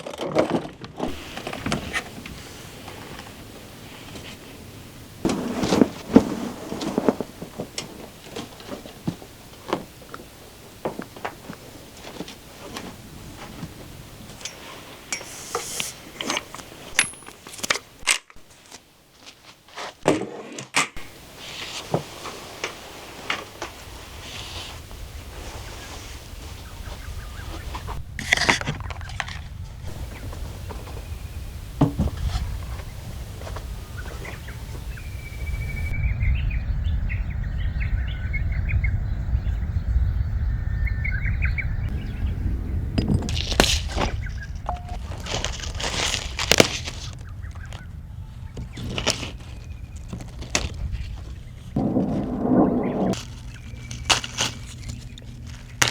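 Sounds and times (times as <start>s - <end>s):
low outdoor rumble: 1.0s - 19.8s, 21.0s - 55.9s
small birds chirping: 21.0s - 55.9s.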